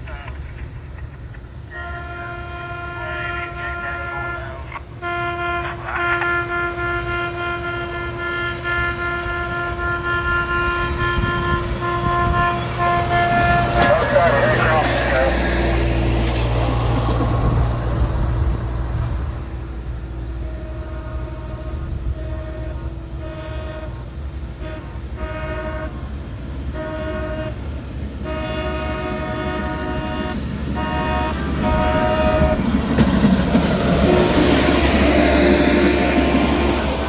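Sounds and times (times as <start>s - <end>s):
low engine rumble: 0.0s - 37.0s
air horn blasts: 1.7s - 15.8s, 20.4s - 24.0s, 24.6s - 26.0s, 26.7s - 27.6s, 28.2s - 33.1s, 33.9s - 37.0s.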